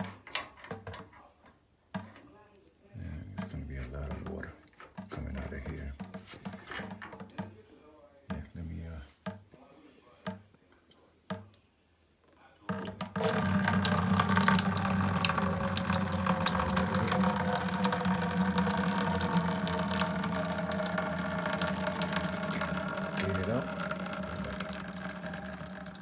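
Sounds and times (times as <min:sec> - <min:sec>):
water gushing from pipe: 0:13.2 - 0:26.0.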